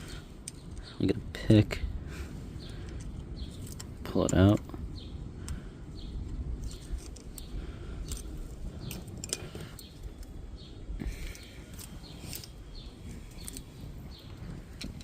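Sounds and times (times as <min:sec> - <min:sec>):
metallic clicks and scrapes: 0:00.0 - 0:01.0, 0:02.6 - 0:04.8, 0:06.6 - 0:10.4, 0:11.1 - 0:15.0
low steady rumble: 0:00.0 - 0:15.0
small birds chirping: 0:00.0 - 0:15.0.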